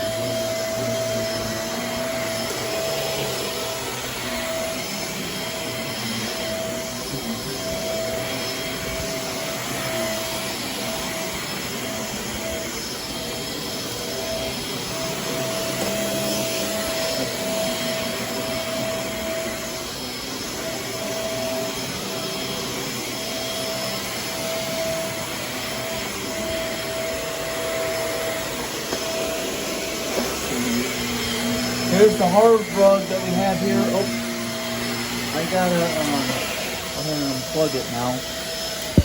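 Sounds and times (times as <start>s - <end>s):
vacuum cleaner running: 0.0s - 39.0s.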